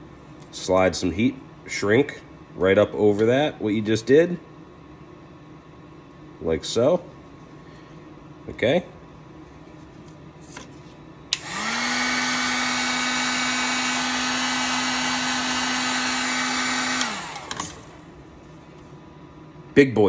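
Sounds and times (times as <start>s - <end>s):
heat gun fan whine: 0.0s - 20.0s
heat gun switch click: 11.3s - 11.7s, 15.5s - 17.9s.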